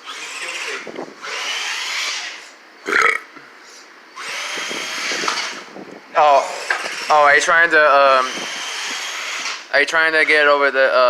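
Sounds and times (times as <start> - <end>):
toy truck motor whining: 0.0 - 2.6, 4.2 - 5.7, 6.3 - 9.7.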